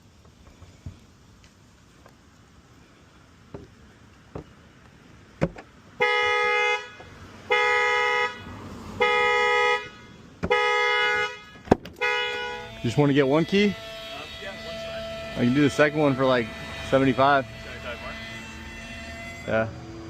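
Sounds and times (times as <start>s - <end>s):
car alarm horn honking: 6.0s - 19.7s.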